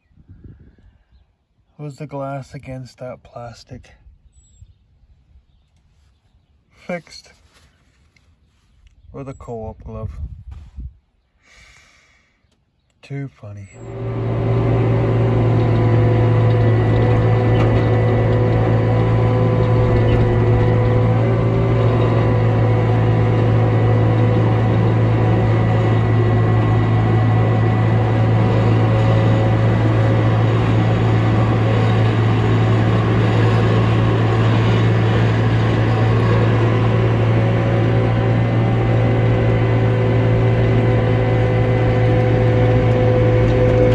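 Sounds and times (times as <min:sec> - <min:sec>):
tractor engine running: 0:13.7 - 0:43.9.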